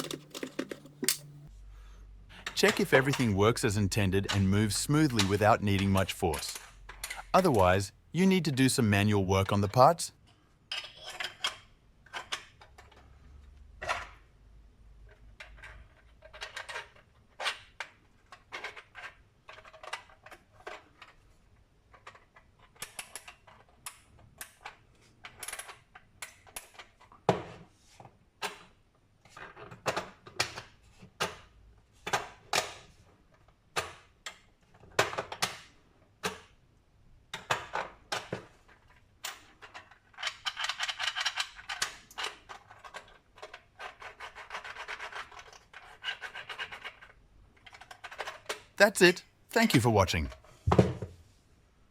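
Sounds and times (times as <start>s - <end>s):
plastic puzzle parts clicking: 0.0s - 1.3s.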